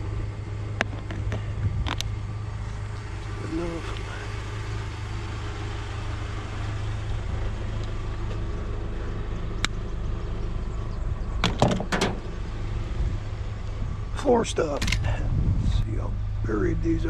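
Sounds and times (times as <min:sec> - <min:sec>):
vehicle engine running: 0:00.0 - 0:17.0
sharp click: 0:14.8 - 0:15.1.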